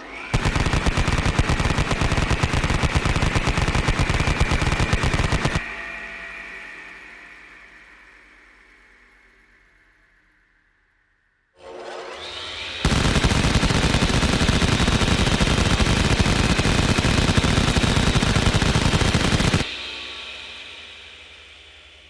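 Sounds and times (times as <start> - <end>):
rising whine: 0.0 - 5.6, 12.3 - 21.7
machine gun firing: 0.3 - 5.6, 12.8 - 19.7.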